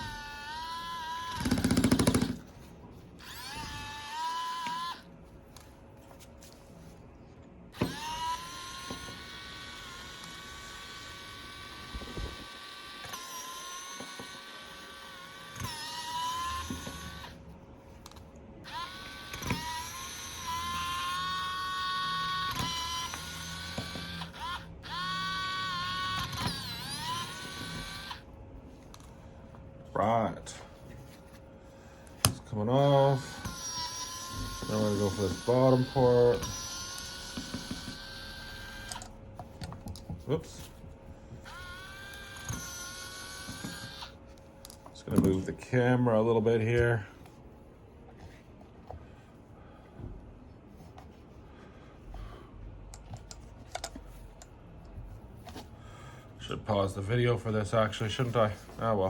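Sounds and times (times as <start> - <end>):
electric screwdriver motor whining: 0.0 - 2.4, 3.2 - 5.1, 7.8 - 17.4, 18.6 - 28.2, 32.8 - 39.2, 41.4 - 44.2.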